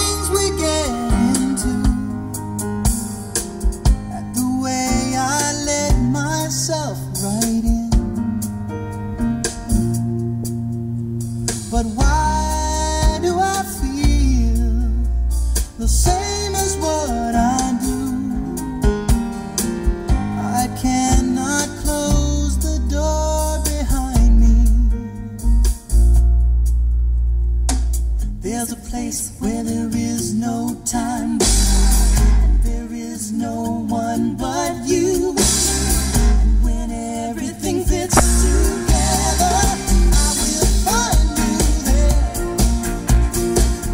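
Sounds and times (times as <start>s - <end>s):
person singing: 0.0s - 2.4s, 36.2s - 42.8s
deep bass: 0.0s - 43.9s
guitar: 0.0s - 43.9s
song through car speakers: 0.0s - 43.9s.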